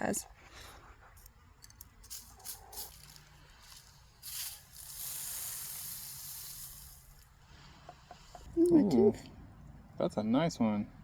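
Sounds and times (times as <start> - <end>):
pebbles clicking: 1.7 - 7.3
sand rustling: 2.0 - 7.4.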